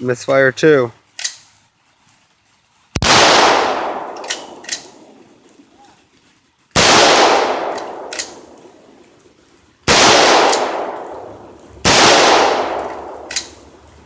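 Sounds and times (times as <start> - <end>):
rifle shots echoing: 3.0 - 5.5, 6.7 - 9.1, 9.8 - 13.9.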